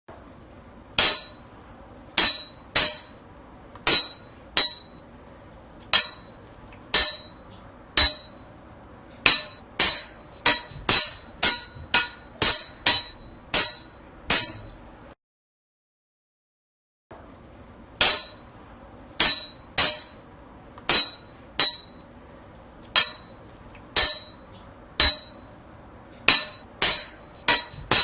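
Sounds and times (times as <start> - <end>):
sword blades clashing: 1.0 - 1.4, 2.2 - 3.2, 3.9 - 5.0, 6.0 - 6.4, 7.0 - 7.4, 8.0 - 8.4, 9.3 - 14.9, 18.0 - 18.5, 19.2 - 20.3, 20.9 - 22.0, 23.0 - 23.4, 24.0 - 24.4, 25.0 - 25.5, 26.3 - 28.0.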